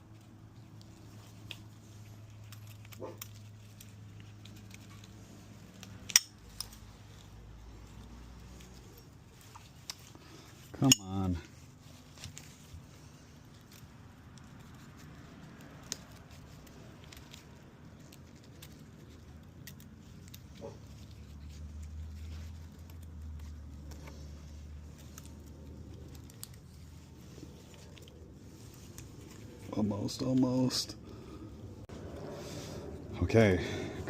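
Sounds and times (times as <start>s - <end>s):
metal ring clicking and scraping: 0.7s - 7.3s, 7.9s - 11.6s.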